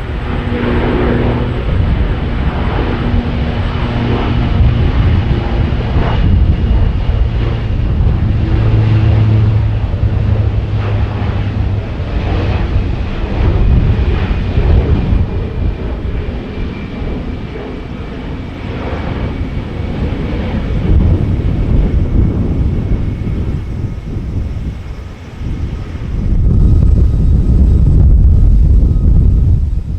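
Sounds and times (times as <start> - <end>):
aircraft engines whining: 0.0 - 29.9
wind buffeting microphone: 0.0 - 29.9.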